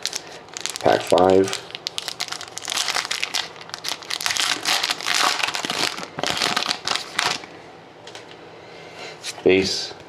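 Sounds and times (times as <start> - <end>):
plastic wrapper tearing and crinkling: 0.0 - 7.5.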